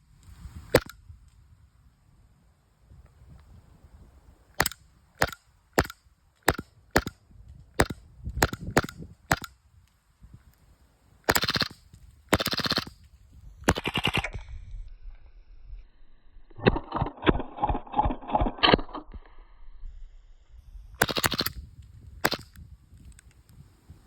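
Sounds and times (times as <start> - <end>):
airsoft pistol single shots: 4.5 - 7.2, 7.8 - 9.5.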